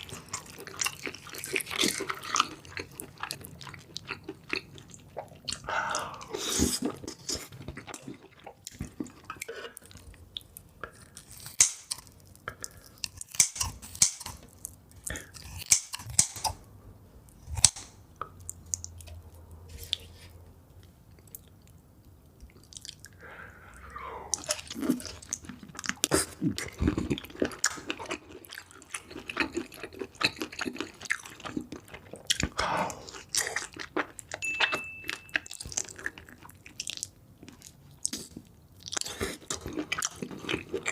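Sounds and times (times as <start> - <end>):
wet chewing and smacking: 0.0 - 16.6, 17.3 - 40.9
sharp snaps and crackles: 11.1 - 16.7, 17.3 - 19.2.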